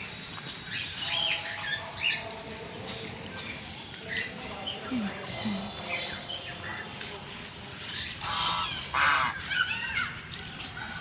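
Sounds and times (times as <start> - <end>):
birds harsh calls: 8.0 - 10.1.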